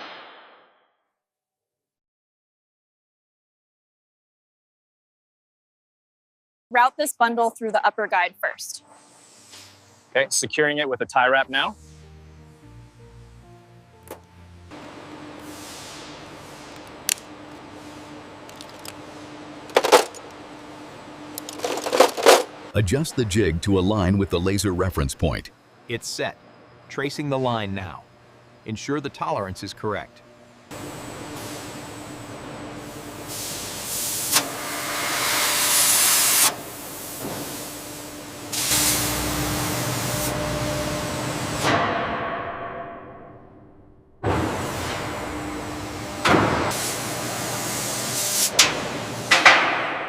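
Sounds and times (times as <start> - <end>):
low workshop hum: 8.8 - 41.9, 44.2 - 50.0
loud hissing air jet: 15.4 - 16.8, 33.0 - 37.9, 38.5 - 40.4, 46.7 - 49.3.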